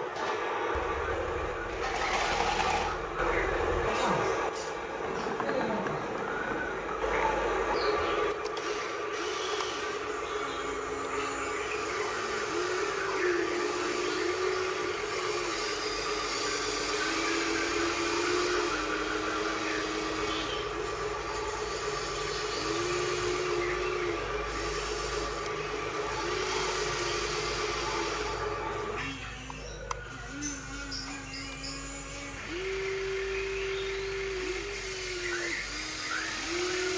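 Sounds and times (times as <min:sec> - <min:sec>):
pump motor whine: 0:00.0 - 0:36.9
mechanical hiss: 0:08.3 - 0:29.1, 0:31.3 - 0:36.9.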